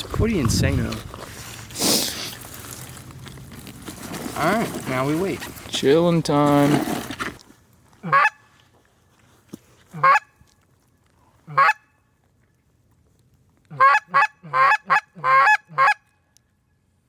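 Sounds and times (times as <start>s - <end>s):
goose honking: 8.0s - 8.4s, 9.9s - 10.3s, 11.5s - 11.8s, 13.7s - 16.0s.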